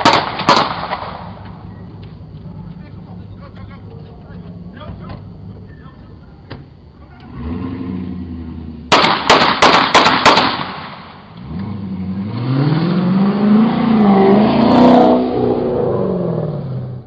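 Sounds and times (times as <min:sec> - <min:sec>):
gunshots: 0:00.0 - 0:01.4, 0:08.9 - 0:11.3
car engine revving: 0:01.0 - 0:09.3, 0:10.4 - 0:17.0.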